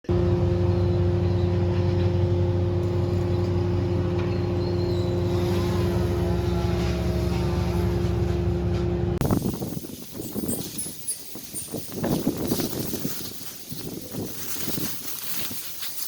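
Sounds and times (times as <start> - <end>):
large engine droning: 0.0 - 9.2.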